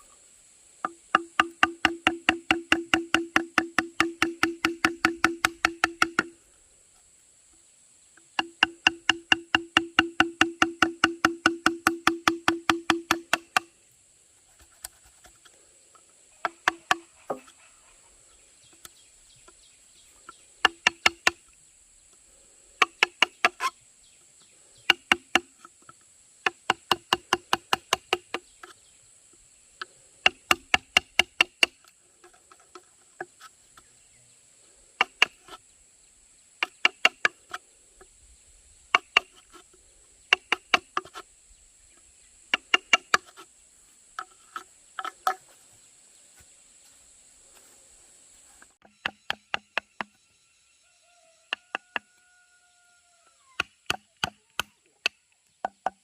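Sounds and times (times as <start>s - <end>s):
rapid knocking on hollow bamboo: 0.8s - 6.4s, 8.2s - 13.8s, 16.4s - 17.6s, 20.2s - 21.5s, 22.8s - 23.8s, 24.8s - 28.8s, 29.8s - 33.9s, 34.9s - 35.6s, 36.6s - 37.6s, 38.9s - 39.6s, 40.2s - 41.3s, 42.4s - 43.5s, 44.1s - 45.5s, 48.8s - 50.2s, 53.6s - 56.0s.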